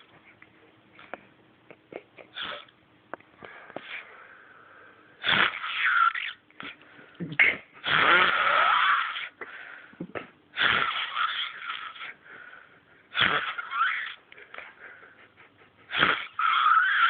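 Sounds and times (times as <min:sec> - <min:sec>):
loud snoring with whistling tone: 0:07.9 - 0:09.3, 0:16.0 - 0:17.0.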